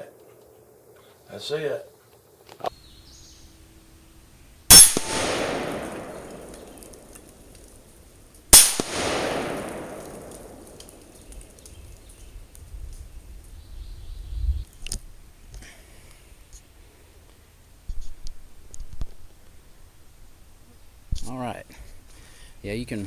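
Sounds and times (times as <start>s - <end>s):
rifle shots echoing: 4.7s - 12.1s.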